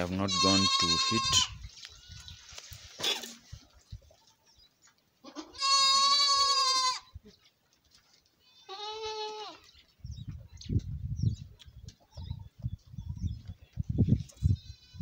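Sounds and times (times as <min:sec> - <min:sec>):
goats bleating: 0:00.0 - 0:02.3, 0:05.2 - 0:07.1, 0:08.4 - 0:09.7.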